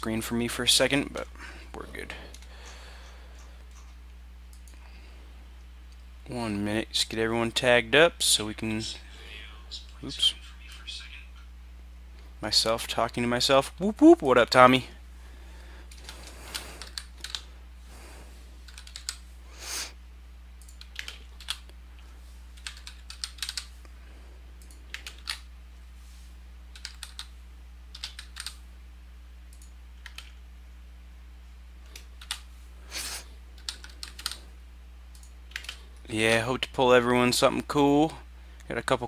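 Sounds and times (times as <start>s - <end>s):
steady low hum: 0.0s - 39.0s
computer keyboard typing: 16.0s - 17.4s, 18.7s - 19.2s, 20.6s - 21.7s, 22.6s - 23.7s, 24.6s - 25.4s, 26.7s - 27.3s, 27.9s - 28.6s, 29.5s - 30.4s, 31.9s - 32.4s, 33.6s - 34.4s, 35.2s - 35.8s.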